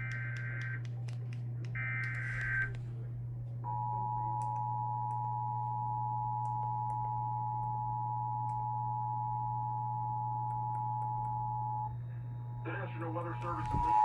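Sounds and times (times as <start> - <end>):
low steady hum: 0.0 - 14.0
two steady sine tones: 3.6 - 12.7, 13.4 - 14.0.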